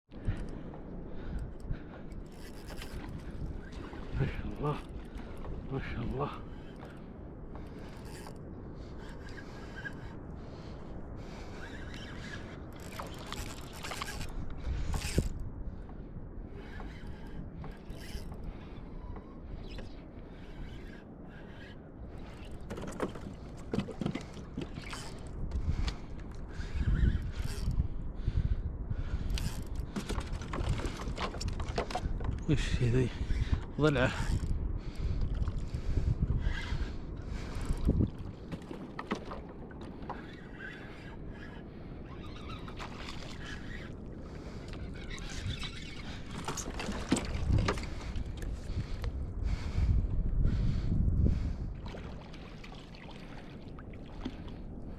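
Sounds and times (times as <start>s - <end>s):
low wind: 0.0s - 54.9s
water noise: 0.1s - 27.8s, 29.1s - 54.9s
knocks and clicks on boat: 22.3s - 27.7s, 29.3s - 32.5s, 37.5s - 40.8s, 44.7s - 49.1s.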